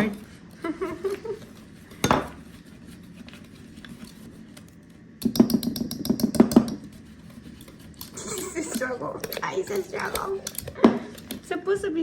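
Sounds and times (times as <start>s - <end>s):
utensil knocking against bowl: 2.0s - 2.4s, 5.2s - 7.0s.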